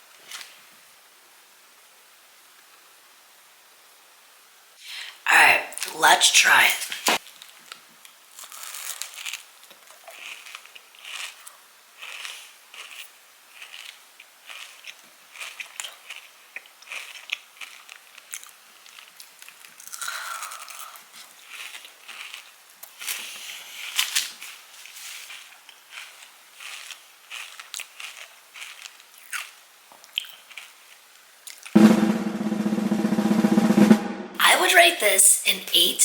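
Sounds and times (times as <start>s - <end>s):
chocolate bar crunching: 7.3s - 31.8s.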